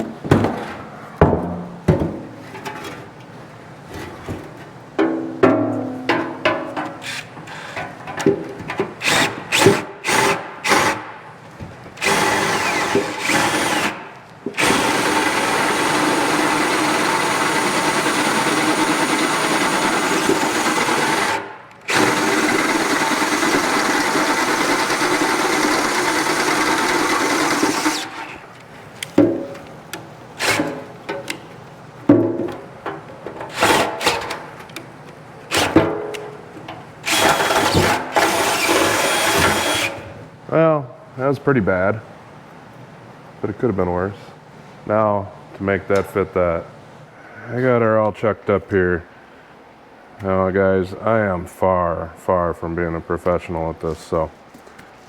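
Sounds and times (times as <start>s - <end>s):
drill boring into steel nut: 9.0s - 11.0s, 12.0s - 14.0s, 14.6s - 28.4s, 37.0s - 40.0s.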